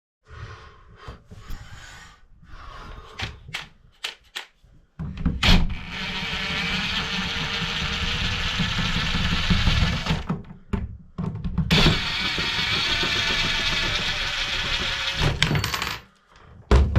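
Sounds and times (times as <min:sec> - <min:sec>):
clicks and knocks: 0:03.1 - 0:05.4.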